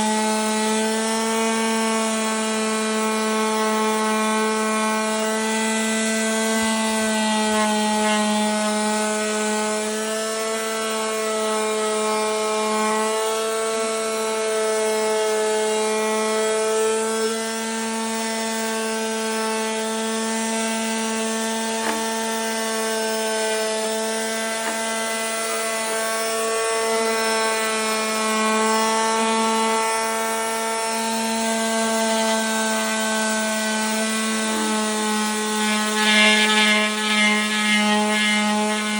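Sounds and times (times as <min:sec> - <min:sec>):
sander motor hum: 0:00.0 - 0:38.9
sandpaper rasping on surface: 0:32.2 - 0:38.9.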